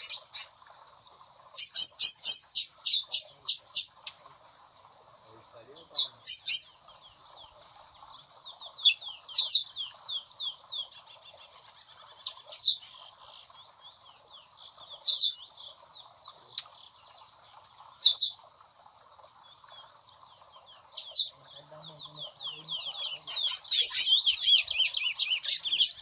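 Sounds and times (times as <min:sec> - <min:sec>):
finches chirping: 0:00.0 - 0:00.6, 0:01.4 - 0:26.0
bird rattle call: 0:01.6 - 0:04.2, 0:06.2 - 0:06.6.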